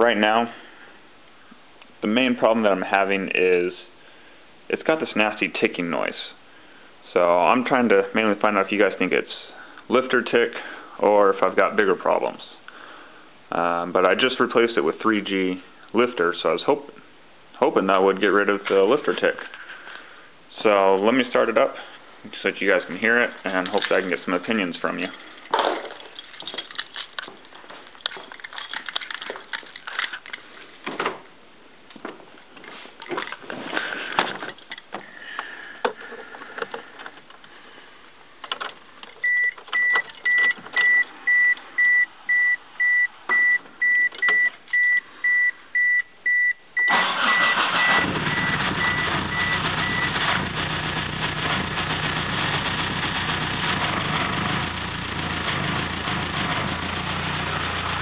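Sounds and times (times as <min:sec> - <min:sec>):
car warning chime beeping: 0:39.2 - 0:50.2
car engine starting and idling: 0:46.9 - 0:58.0.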